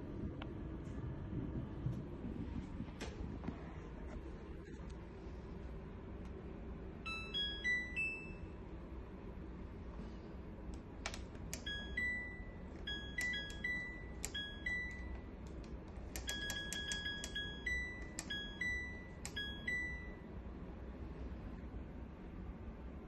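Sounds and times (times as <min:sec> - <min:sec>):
steady low hum: 0:00.0 - 0:23.0
washing machine beeping tune: 0:07.0 - 0:08.6, 0:11.5 - 0:20.3.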